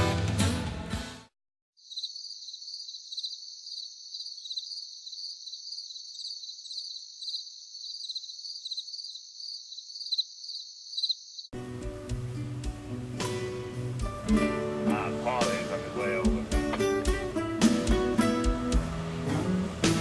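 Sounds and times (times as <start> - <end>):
crickets chirring: 1.8 - 11.6
strummed acoustic guitar: 11.7 - 20.0.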